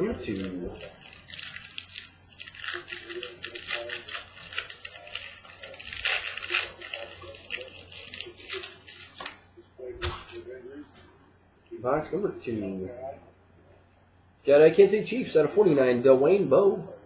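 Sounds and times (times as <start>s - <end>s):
packaging tearing: 0.0s - 9.4s
packaging rustling and crinkling: 0.0s - 10.6s.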